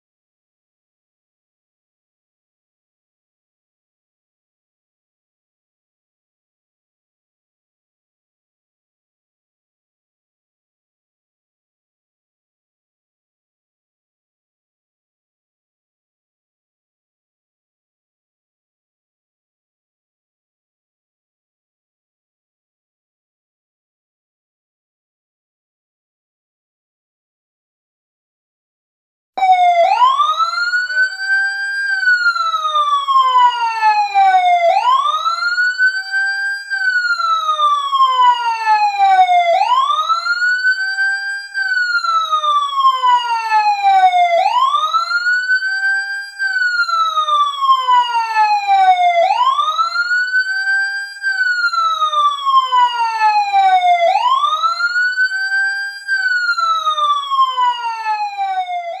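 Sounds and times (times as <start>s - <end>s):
fire truck siren wailing: 29.4s - 59.0s.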